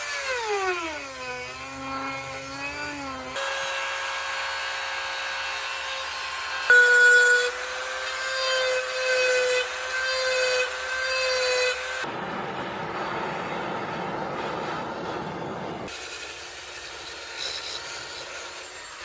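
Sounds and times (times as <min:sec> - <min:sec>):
power tool motor whining: 0:00.0 - 0:12.1
rushing grinding noise: 0:12.0 - 0:16.0.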